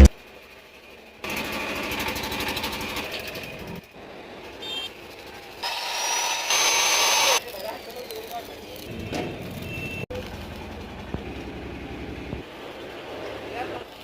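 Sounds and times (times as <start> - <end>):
workshop noise: 1.2 - 7.5
welding crackling buzz: 5.6 - 7.5.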